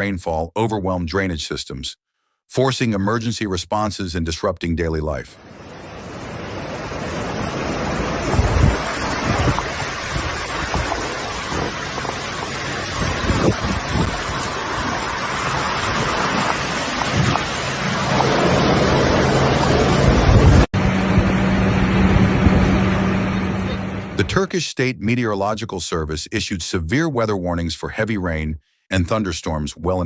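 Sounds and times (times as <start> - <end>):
rushing floodwater: 5.4 - 20.7
steady low hum: 5.6 - 24.5
wind buffeting microphone: 6.2 - 24.1.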